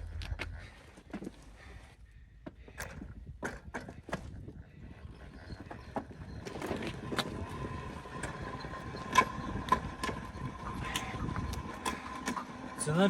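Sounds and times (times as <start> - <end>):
cart rolling on road: 3.6 - 13.0.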